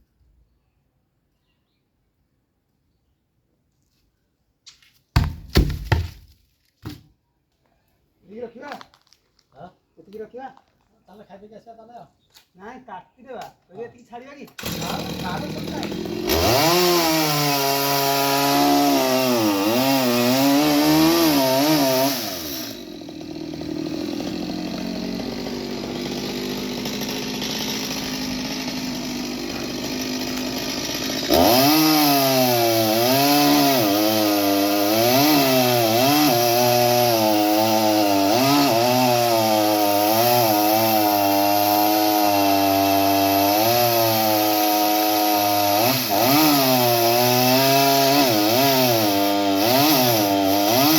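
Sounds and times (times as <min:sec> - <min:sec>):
chainsaw cutting wood: 0:05.2 - 0:07.0, 0:14.5 - 0:50.9.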